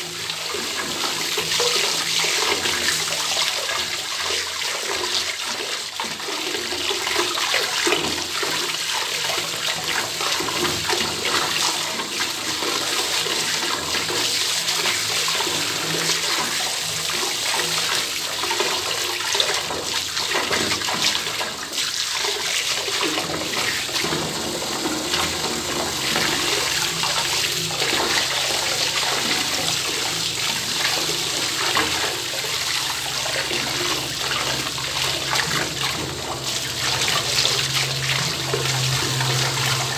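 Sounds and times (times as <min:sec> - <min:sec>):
tap water running into bathtub: 0:00.0 - 0:39.9.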